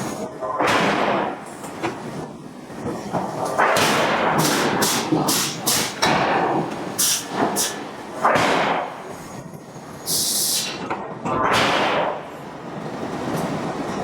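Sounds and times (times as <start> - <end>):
sharp hiss: 7.0 - 7.8, 10.1 - 10.8.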